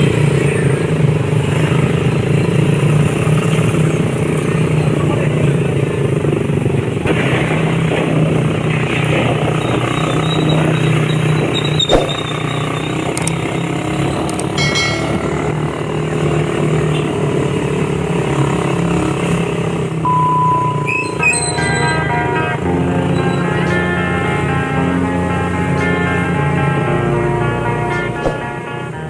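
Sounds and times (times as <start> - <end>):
sharp click: 13.1 - 13.4, 14.3 - 15.2.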